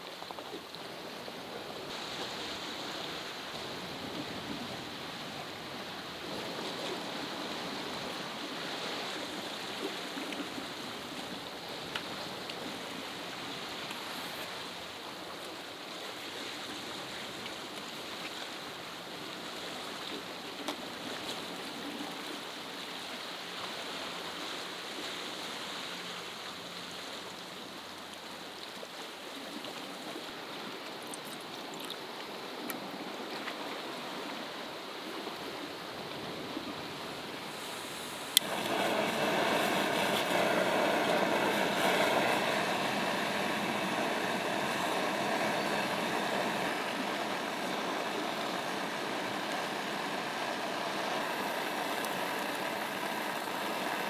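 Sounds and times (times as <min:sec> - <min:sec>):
sea waves on rocky shore: 0:01.5 - 0:15.1, 0:35.7 - 0:54.0
faint ticks: 0:37.6 - 0:54.0.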